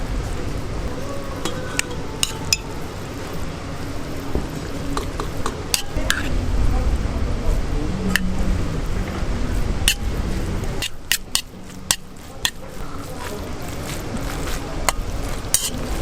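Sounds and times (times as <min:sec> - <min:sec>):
dishes and utensils clinking: 0:01.4 - 0:02.8, 0:04.9 - 0:06.3, 0:10.8 - 0:13.4, 0:14.4 - 0:15.9.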